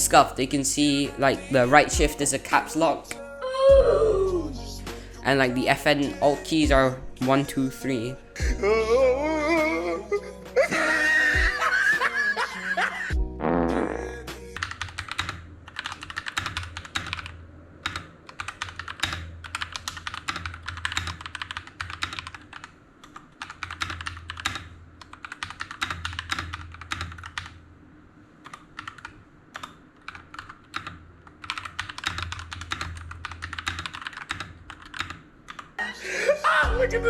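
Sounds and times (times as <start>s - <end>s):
mechanical keyboard key clacks: 14.6s - 27.5s, 28.5s - 35.7s.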